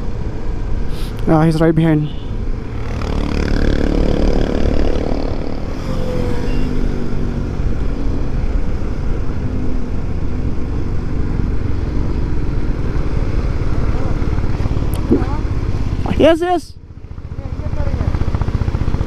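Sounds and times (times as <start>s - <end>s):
motorcycle engine running: 2.7s - 7.2s, 16.8s - 19.0s.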